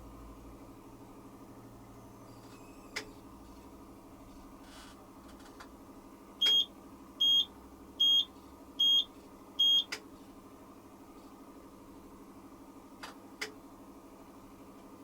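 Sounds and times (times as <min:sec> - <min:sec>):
washing machine low hum: 0:00.0 - 0:15.0
washing machine short high beeps: 0:06.4 - 0:10.0.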